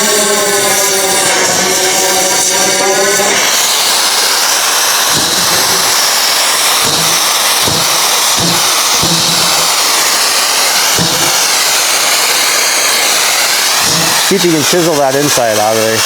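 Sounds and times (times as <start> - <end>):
cutting torch flame hissing: 0.0 - 16.0
low dull knocks: 6.8 - 9.8, 11.0 - 11.5.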